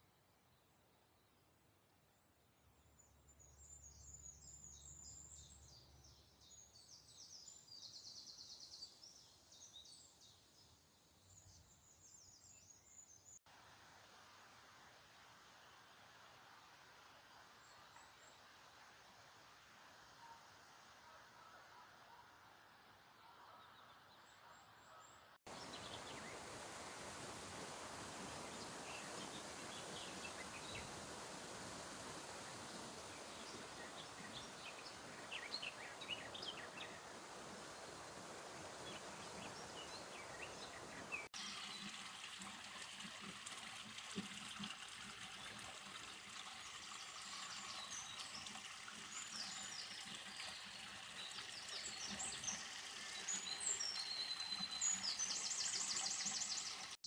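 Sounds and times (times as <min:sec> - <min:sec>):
steady even hiss: 0:25.5 - 0:41.3
songbird chirping: 0:46.8 - 0:57.0.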